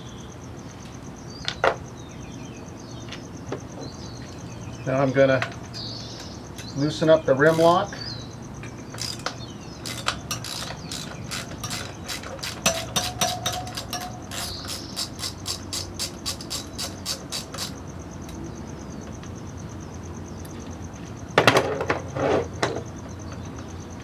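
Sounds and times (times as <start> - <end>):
ratchet wrench clicking: 7.4 - 7.9, 8.7 - 18.4.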